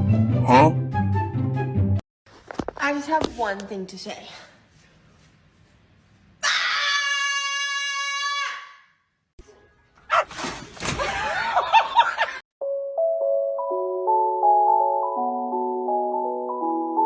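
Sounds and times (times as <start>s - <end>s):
high-pitched scream: 6.4s - 8.9s.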